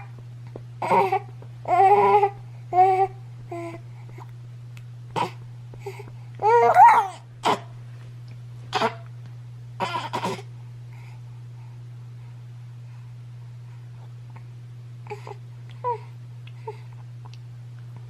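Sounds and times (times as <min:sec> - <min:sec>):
steady low hum: 0:00.0 - 0:18.0
baby cooing: 0:00.8 - 0:03.8, 0:06.4 - 0:07.7, 0:09.8 - 0:10.4.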